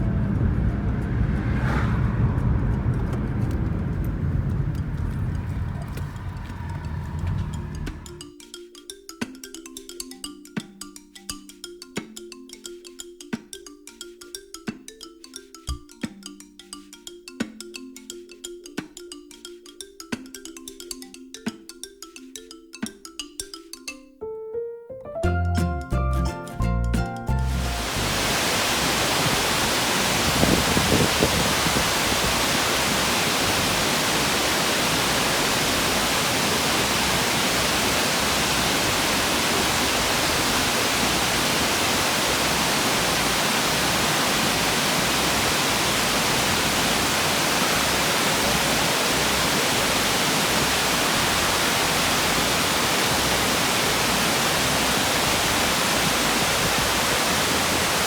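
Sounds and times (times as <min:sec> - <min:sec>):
waterfall roaring: 0:04.1 - 0:08.2, 0:27.5 - 0:58.0.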